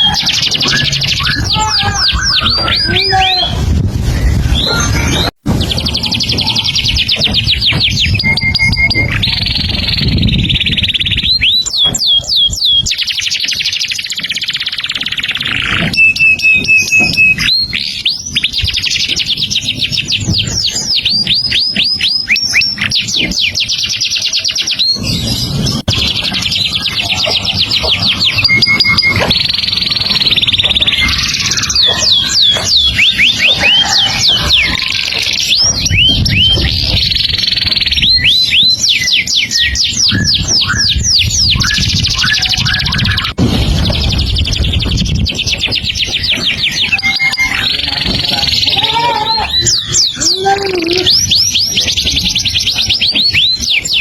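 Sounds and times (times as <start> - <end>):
songbird singing: 0.0 - 3.6, 4.2 - 54.0.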